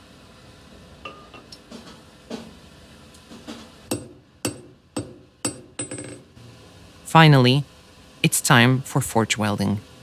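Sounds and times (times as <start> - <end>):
hammer striking metal on anvil: 1.1 - 1.5, 3.9 - 6.3.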